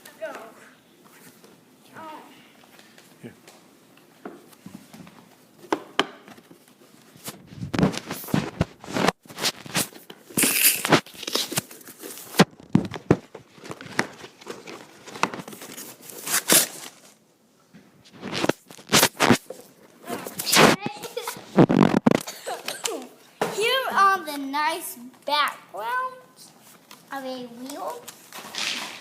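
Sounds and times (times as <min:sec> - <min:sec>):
packaging tearing and crinkling: 0:07.8 - 0:12.8, 0:13.6 - 0:17.0, 0:18.2 - 0:19.4, 0:28.0 - 0:29.0.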